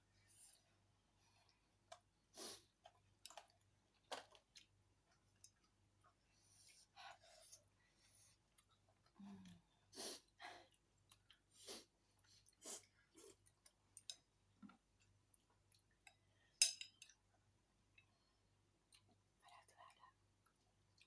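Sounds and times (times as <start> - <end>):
chewing and mouth noises: 2.8 - 6.2, 10.7 - 11.6.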